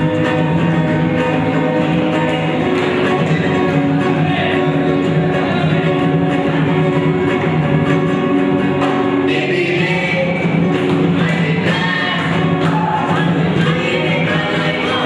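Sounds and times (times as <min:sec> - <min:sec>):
rhythmic instrumental accompaniment: 0:00.0 - 0:15.0
group of voices singing: 0:09.2 - 0:15.0.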